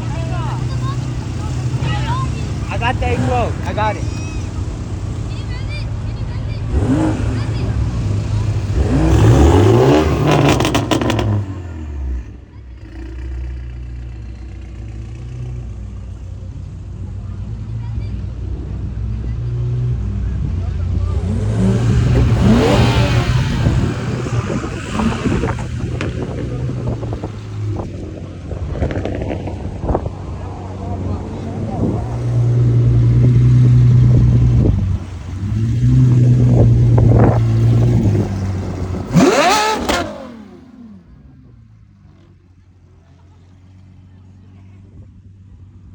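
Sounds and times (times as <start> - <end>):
car engine cracks and idle: 21.6 - 45.0.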